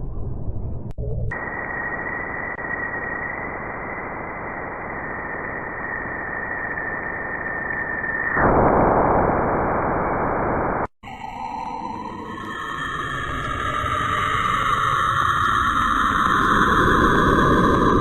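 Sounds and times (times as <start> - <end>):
thin steady whistle: 1.3 - 8.5
static hiss: 1.3 - 10.9.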